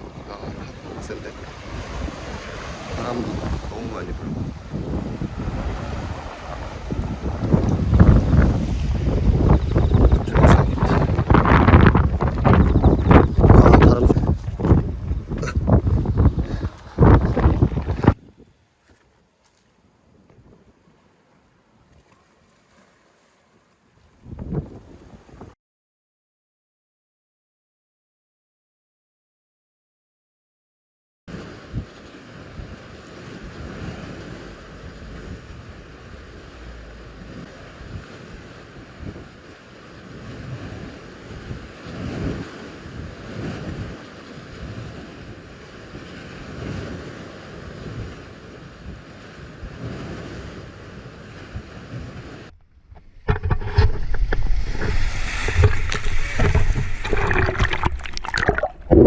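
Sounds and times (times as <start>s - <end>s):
close rush of water: 0.0s - 15.0s, 53.0s - 59.0s
waves breaking: 0.0s - 18.2s, 19.2s - 25.5s, 31.3s - 59.0s
wind buffeting microphone: 0.0s - 18.5s, 24.2s - 25.6s, 31.3s - 59.0s.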